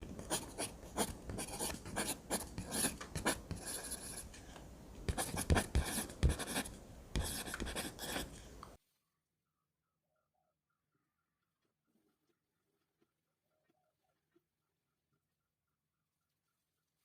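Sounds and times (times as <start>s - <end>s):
pencil scratching on paper: 0.0s - 4.3s, 5.1s - 8.4s.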